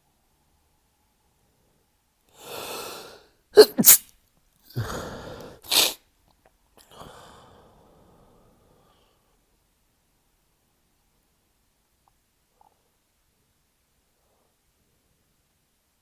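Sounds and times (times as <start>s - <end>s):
breath drawn in: 2.4s - 4.0s
man sneezing stifled: 3.6s - 4.0s, 5.7s - 6.0s.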